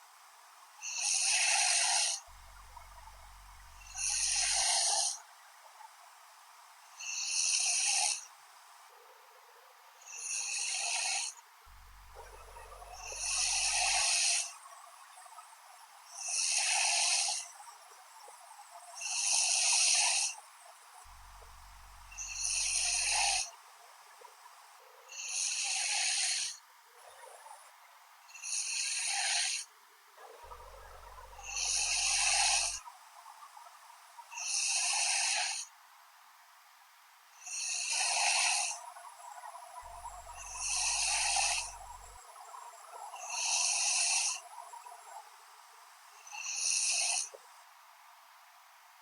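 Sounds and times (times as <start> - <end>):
woman snoring: 0.9 - 5.1, 10.1 - 11.3, 12.1 - 14.5, 21.4 - 23.5, 25.2 - 26.5, 31.1 - 32.8, 34.4 - 35.6, 37.4 - 38.8, 39.9 - 42.2, 43.2 - 44.4.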